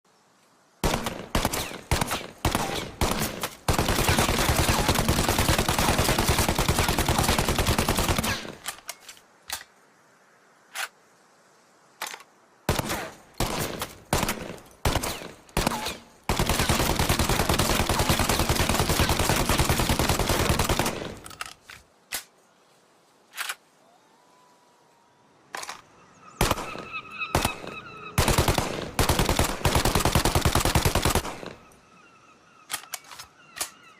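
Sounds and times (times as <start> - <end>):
submachine gun automatic fire: 0.8 - 8.6.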